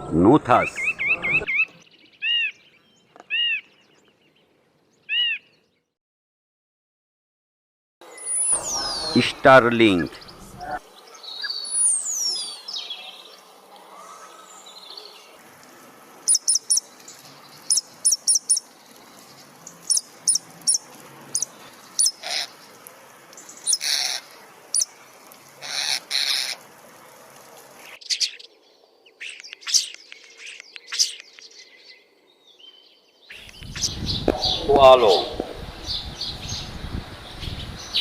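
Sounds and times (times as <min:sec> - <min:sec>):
bird chirping high: 0:00.5 - 0:04.4, 0:05.0 - 0:05.8, 0:08.1 - 0:13.3, 0:16.2 - 0:22.8, 0:23.4 - 0:25.0, 0:27.9 - 0:38.0
starling whistling and calling: 0:16.3 - 0:17.0, 0:17.6 - 0:18.7, 0:19.9 - 0:22.6, 0:23.6 - 0:24.9.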